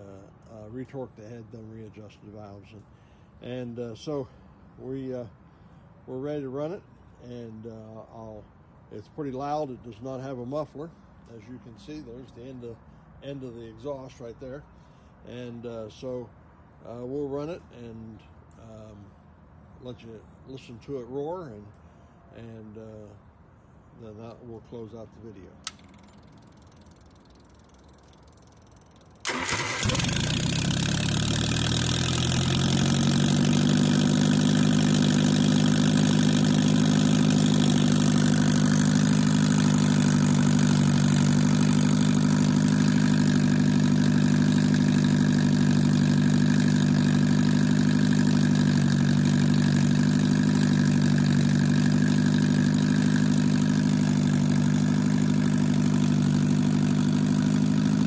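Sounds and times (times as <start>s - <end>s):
unmuffled car engine revving: 29.4s - 58.0s.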